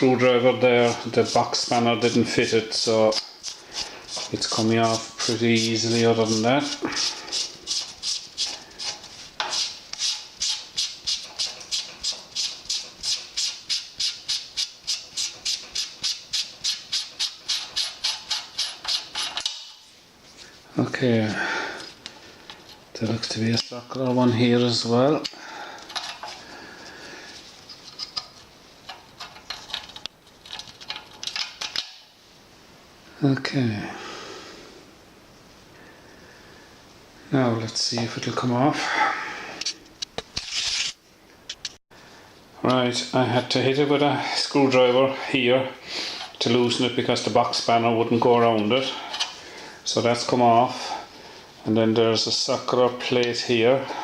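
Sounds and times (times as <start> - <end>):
metal scraping on metal: 0.1 - 19.9.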